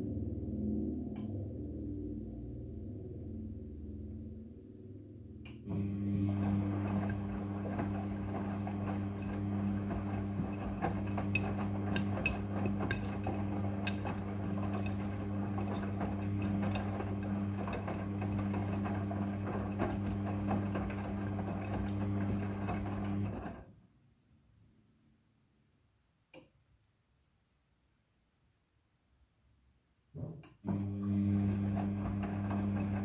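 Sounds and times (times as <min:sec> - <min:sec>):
washing machine running: 0:05.6 - 0:23.7, 0:30.7 - 0:33.0.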